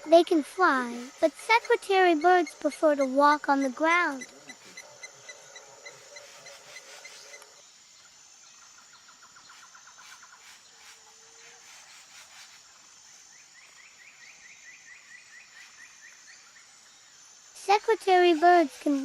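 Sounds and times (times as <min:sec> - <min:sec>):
rapid ticking bird trill: 0:00.0 - 0:07.6
small birds calling: 0:00.0 - 0:19.0
steady high-pitched hum: 0:00.0 - 0:19.0.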